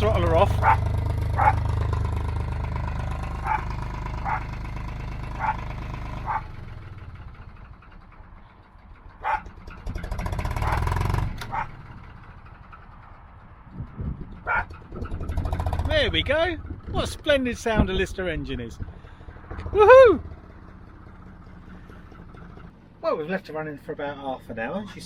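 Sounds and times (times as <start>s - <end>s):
diesel engine rumbling: 0.0s - 25.0s
dog barking: 0.6s - 1.6s, 3.4s - 4.5s, 5.4s - 5.6s, 6.2s - 6.5s, 9.2s - 9.5s, 11.5s - 11.7s, 14.4s - 14.7s.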